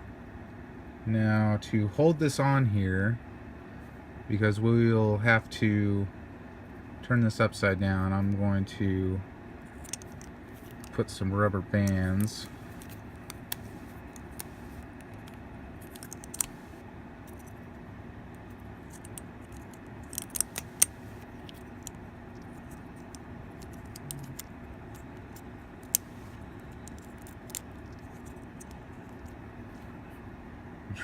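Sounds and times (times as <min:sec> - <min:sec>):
low room hum: 0:00.0 - 0:31.0
small clicks and snaps: 0:09.8 - 0:11.0, 0:11.8 - 0:16.6, 0:18.9 - 0:29.4.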